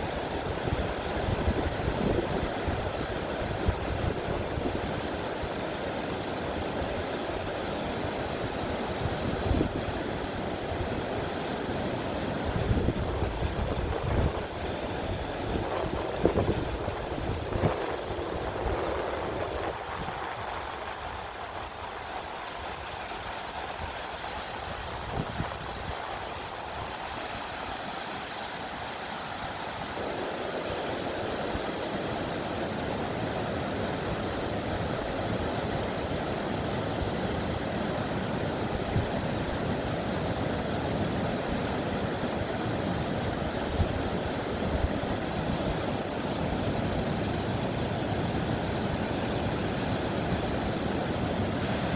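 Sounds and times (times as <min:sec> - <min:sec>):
waterfall rushing: 0:47.4 - 0:51.9.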